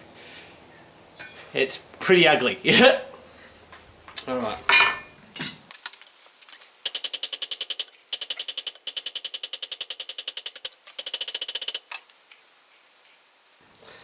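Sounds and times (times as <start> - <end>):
rapid hammering on steel: 6.9 - 11.8.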